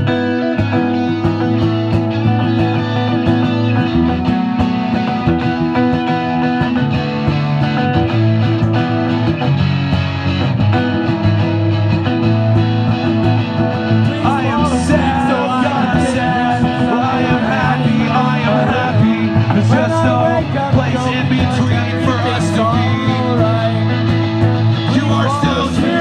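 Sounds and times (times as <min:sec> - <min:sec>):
rock music with guitar: 0:00.0 - 0:26.0
person singing: 0:13.9 - 0:26.0.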